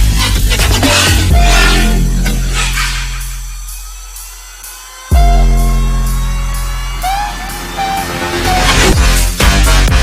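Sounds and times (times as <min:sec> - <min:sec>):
steady higher tone: 0:01.3 - 0:09.1
heavy sustained bass note: 0:01.3 - 0:09.2.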